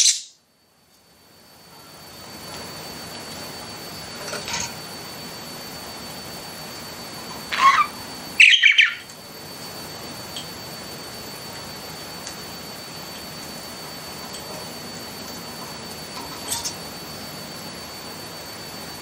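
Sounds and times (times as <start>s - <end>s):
budgerigars chirping and squawking: 0.0s - 0.3s, 7.5s - 9.0s
steady hiss: 0.0s - 8.4s, 9.0s - 19.0s
faint high whine: 0.0s - 19.0s.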